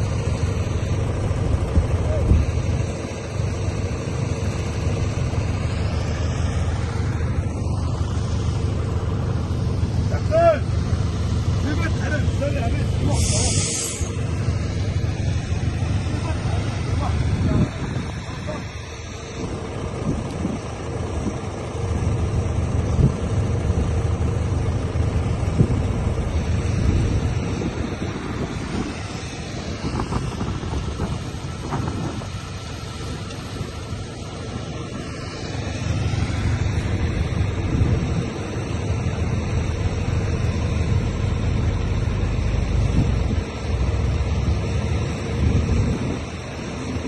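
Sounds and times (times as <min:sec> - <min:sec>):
vehicle engine running: 0:00.0 - 0:47.0
wind buffeting microphone: 0:00.2 - 0:04.0, 0:12.6 - 0:23.6, 0:24.8 - 0:38.6, 0:45.2 - 0:47.0.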